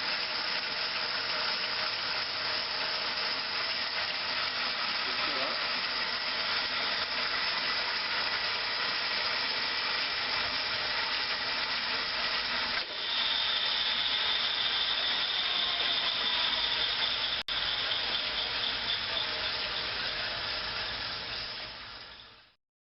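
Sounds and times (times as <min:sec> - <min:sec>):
band saw running: 0:00.0 - 0:22.6
high whine: 0:12.7 - 0:22.6.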